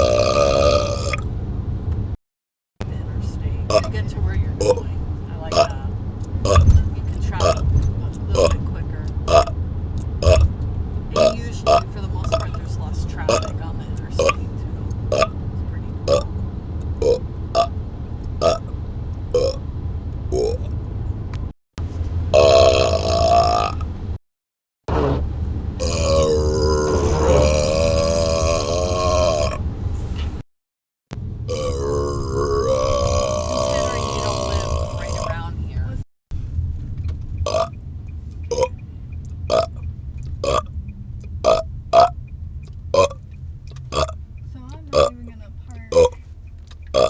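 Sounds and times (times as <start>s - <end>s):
man burping: 0.0s - 1.2s, 19.4s - 19.6s, 22.4s - 23.8s, 25.8s - 29.6s, 31.5s - 35.3s
low road rumble: 0.0s - 2.2s, 2.8s - 24.2s, 24.8s - 30.4s, 31.1s - 47.0s.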